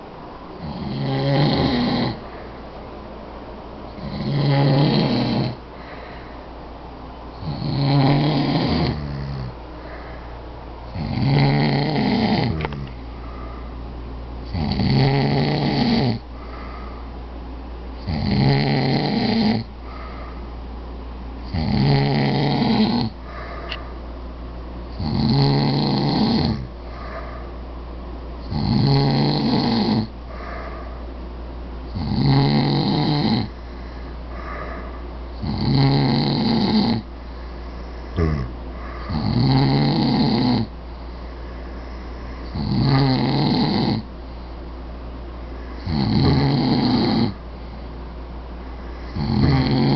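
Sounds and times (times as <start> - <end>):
men snoring heavily: 0.6 - 2.2, 4.0 - 5.6, 7.4 - 9.5, 10.9 - 12.8, 14.5 - 16.2, 18.0 - 19.7, 21.5 - 23.7, 25.0 - 27.4, 28.5 - 30.1, 31.9 - 33.5, 34.4 - 37.1, 38.1 - 40.7, 42.5 - 44.1, 45.8 - 47.4, 49.0 - 49.9.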